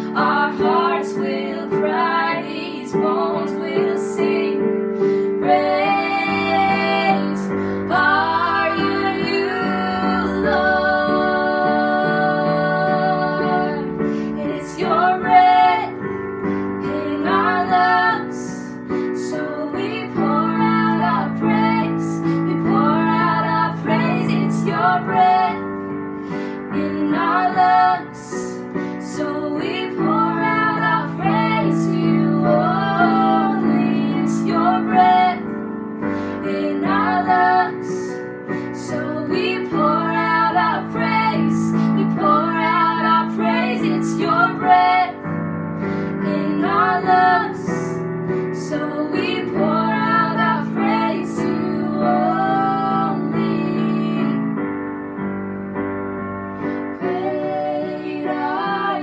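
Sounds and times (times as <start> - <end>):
woman singing slow song: 0.0 - 4.7, 5.3 - 16.1, 26.6 - 35.6, 36.2 - 45.2, 48.6 - 54.5, 56.9 - 59.0
piano chords: 0.0 - 59.0.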